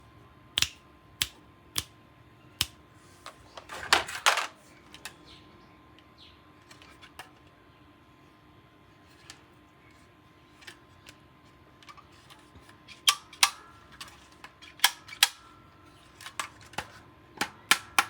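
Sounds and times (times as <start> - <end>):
toy gun plastic clicks: 13.0 - 15.4.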